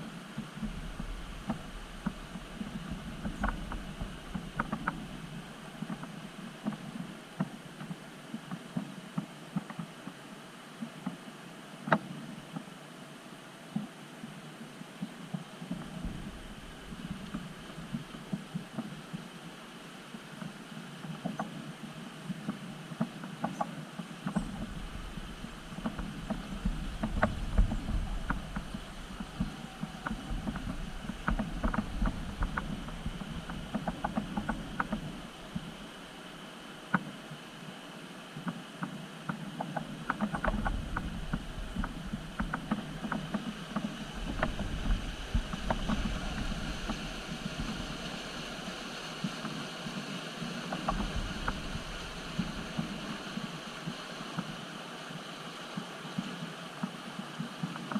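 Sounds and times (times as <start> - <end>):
low steady rumble: 0.0 - 9.2, 15.4 - 20.6, 24.3 - 38.4, 39.0 - 54.7
stones clicking under tyres: 24.3 - 35.7, 39.7 - 47.8.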